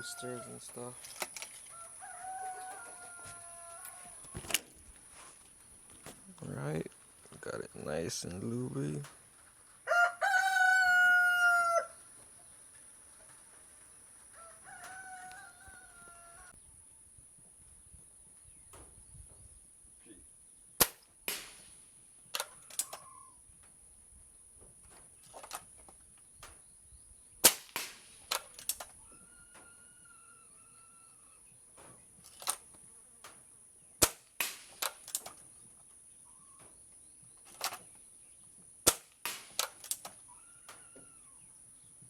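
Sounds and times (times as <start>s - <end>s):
rooster crowing: 0.0s - 0.6s, 1.6s - 4.4s, 9.8s - 12.1s, 14.3s - 16.6s, 29.0s - 31.4s
air rifle firing: 20.8s - 21.8s, 27.4s - 28.8s, 34.0s - 35.2s, 38.8s - 40.0s.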